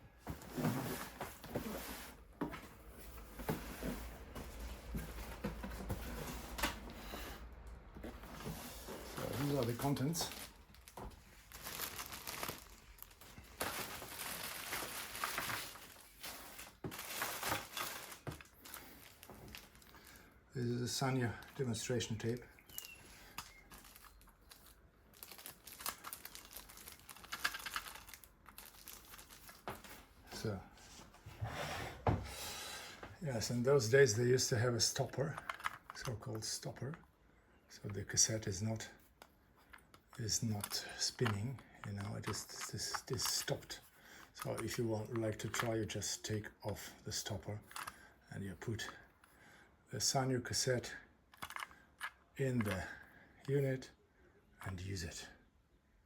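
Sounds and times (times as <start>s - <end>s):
packing rustling: 8.2s - 20.2s, 22.6s - 30.0s.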